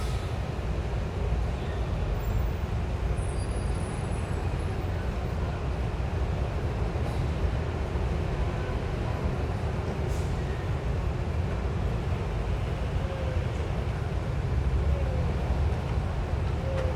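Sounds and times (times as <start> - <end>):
low rumble of city traffic: 0.0 - 16.9.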